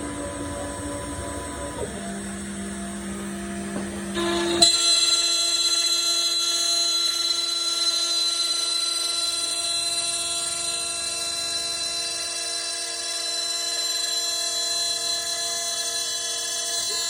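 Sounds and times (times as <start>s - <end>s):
spindle motor whining: 0.0s - 17.0s.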